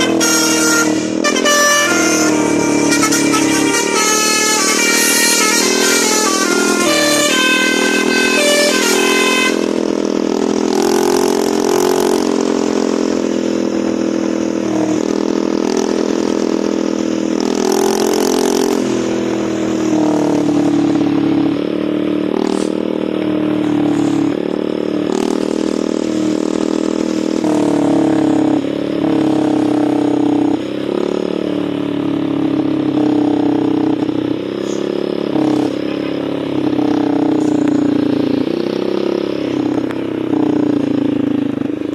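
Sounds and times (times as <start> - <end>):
musical air horn: 0.0 - 9.9.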